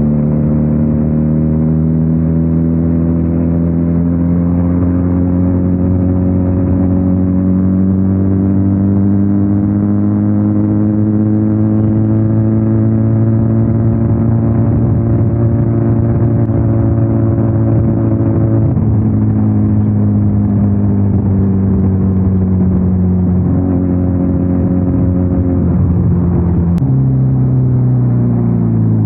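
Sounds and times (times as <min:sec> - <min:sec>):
motorcycle engine running: 0:00.0 - 0:29.0.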